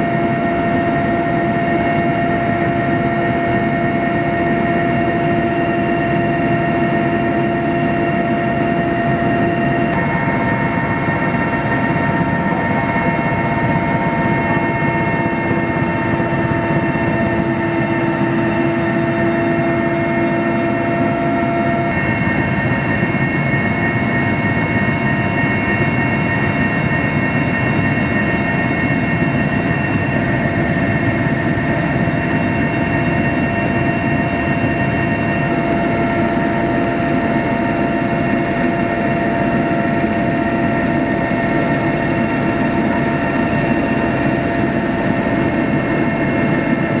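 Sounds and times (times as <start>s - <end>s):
aircraft engine drone: 0.0s - 47.0s
whining tones: 0.1s - 23.3s.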